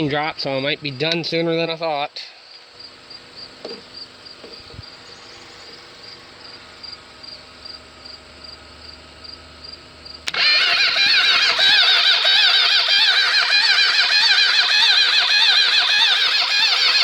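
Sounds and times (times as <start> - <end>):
crickets chirping: 0.0 - 17.0
electric starter cranking engine: 10.0 - 17.0.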